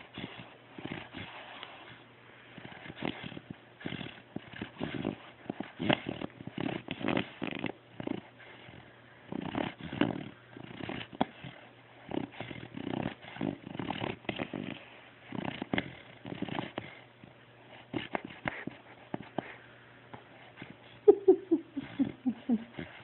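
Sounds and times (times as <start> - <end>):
rattly snoring: 0.0 - 1.9, 2.5 - 17.1, 21.3 - 23.0.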